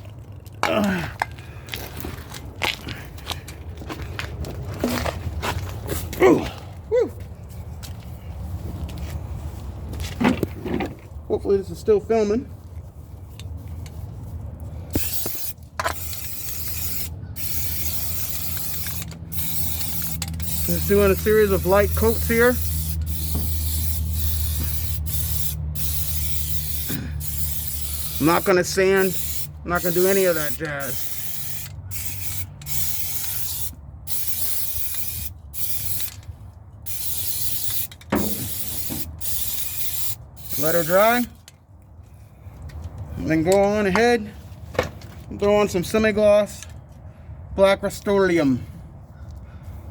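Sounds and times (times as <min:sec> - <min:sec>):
aerosol can spraying hiss: 0:15.0 - 0:36.1, 0:36.9 - 0:41.1.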